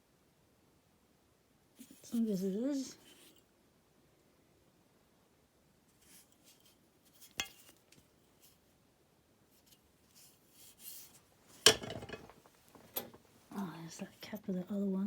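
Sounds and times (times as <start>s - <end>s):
faint rattling: 11.4s - 14.6s.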